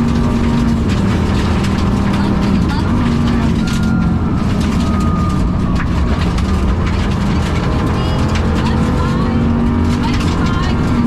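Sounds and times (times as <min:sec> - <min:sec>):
car engine under load: 0:00.0 - 0:11.0
gear whine: 0:00.0 - 0:11.0.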